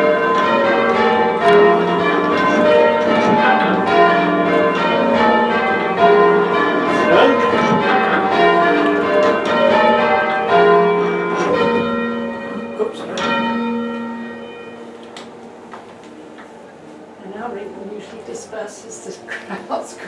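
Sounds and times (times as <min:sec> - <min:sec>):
church bells change ringing: 0:00.0 - 0:15.7.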